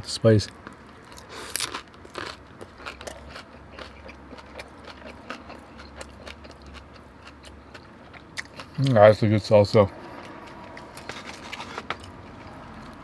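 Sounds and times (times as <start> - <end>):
wet chewing: 0.5 - 9.0, 10.2 - 13.0.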